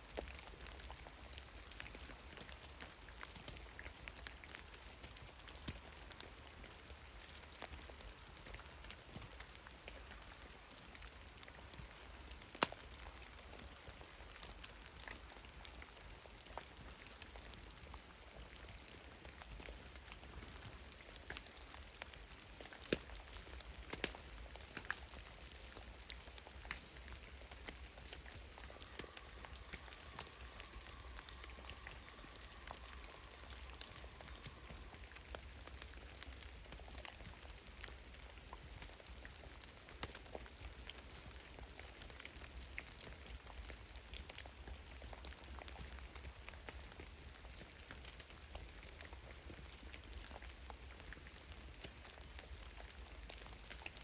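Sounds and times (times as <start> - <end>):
faint steady hiss: 0.0 - 54.0
faint steady tone: 0.0 - 54.0
water drops dripping: 27.0 - 35.4.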